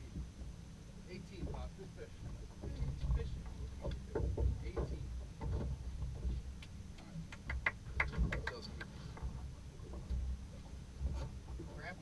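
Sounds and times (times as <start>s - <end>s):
low steady rumble: 0.0s - 12.0s
sharp clicks and light taps: 6.6s - 9.3s.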